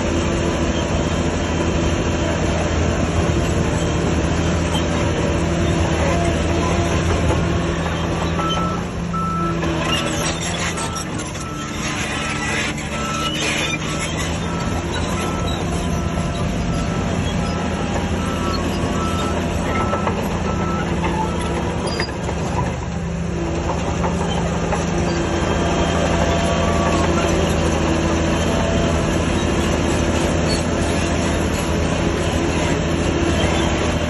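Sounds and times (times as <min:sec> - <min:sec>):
diesel engine under load: 0:00.0 - 0:34.0
machinery grinding and clanking: 0:00.0 - 0:34.0
reversing alarm beeping: 0:08.2 - 0:22.1.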